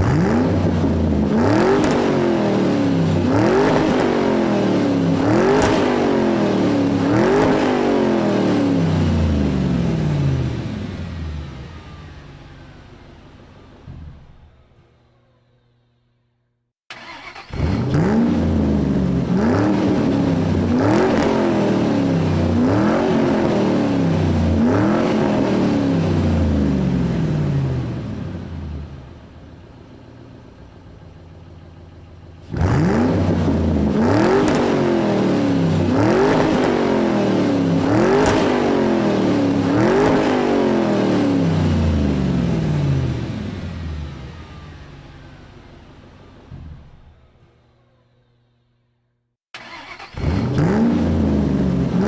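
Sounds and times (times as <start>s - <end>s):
engine revving in blips: 0.0s - 12.8s, 16.9s - 29.0s, 32.4s - 45.8s, 49.6s - 52.0s
quiet engine running: 8.7s - 15.7s, 26.0s - 32.6s, 41.4s - 49.0s.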